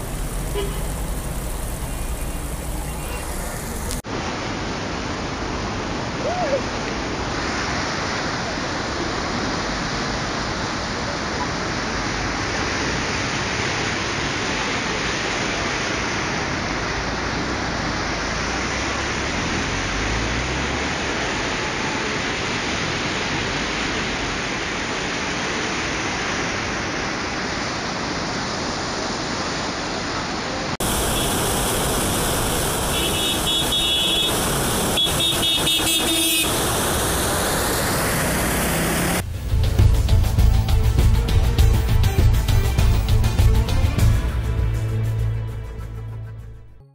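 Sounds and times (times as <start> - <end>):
floodwater rushing: 0.0 - 45.7
road traffic: 0.0 - 46.8
car horn: 0.4 - 1.0, 30.8 - 31.5, 32.8 - 36.7.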